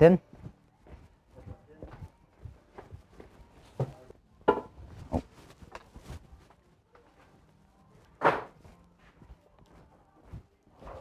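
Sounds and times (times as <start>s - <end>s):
footsteps: 0.2s - 11.0s.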